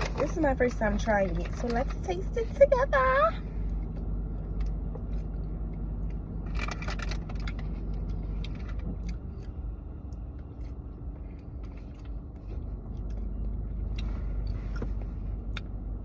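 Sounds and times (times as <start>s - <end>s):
car cabin rumble: 0.0s - 16.0s.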